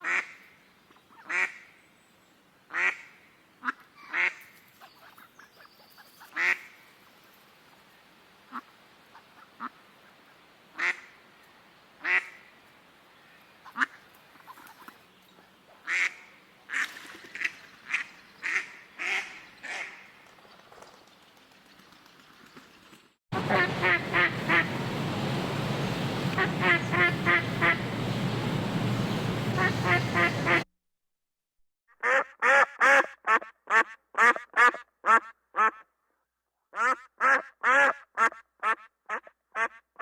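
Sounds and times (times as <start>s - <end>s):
ducks quacking: 23.4s - 30.6s.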